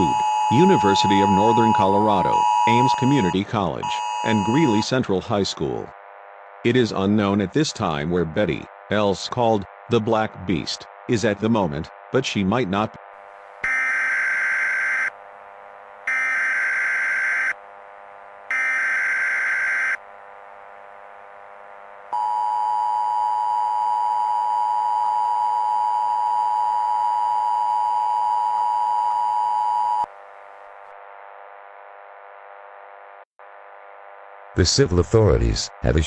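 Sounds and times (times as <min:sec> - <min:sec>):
two-tone attention signal: 0:00.0 - 0:04.8
buzzing data bursts: 0:00.0 - 0:04.9
faint steady drone: 0:00.0 - 0:05.0.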